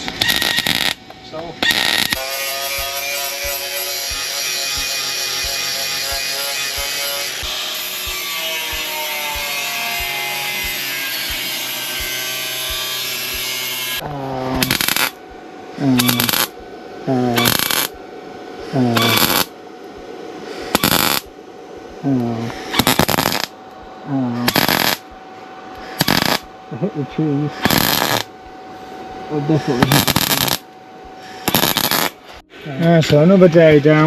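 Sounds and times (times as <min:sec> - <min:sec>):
welder bursts: 0:00.0 - 0:15.2, 0:15.8 - 0:18.0, 0:18.8 - 0:19.5, 0:20.6 - 0:21.3, 0:22.2 - 0:23.6, 0:24.4 - 0:25.1, 0:25.7 - 0:26.5, 0:27.5 - 0:28.3, 0:29.6 - 0:32.5
background music with steady beat: 0:02.8 - 0:14.0.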